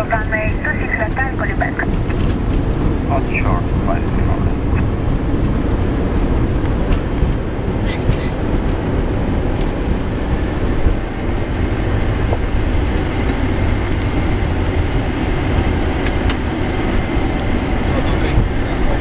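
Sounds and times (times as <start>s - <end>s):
aircraft engine rumble: 0.0s - 19.0s
wheels rolling on pavement: 0.5s - 19.0s.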